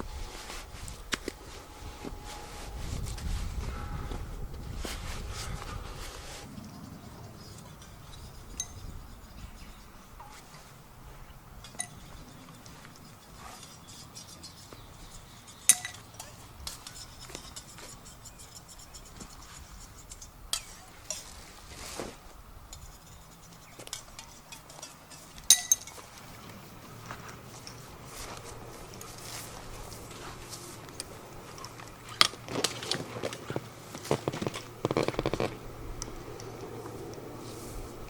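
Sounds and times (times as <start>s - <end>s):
metal gear clinking: 22.9s - 26.2s.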